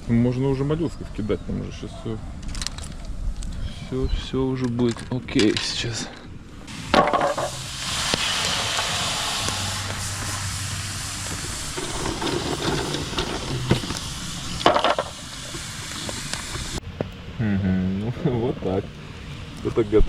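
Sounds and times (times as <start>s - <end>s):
sea snails hissing on fire: 6.7s - 16.8s.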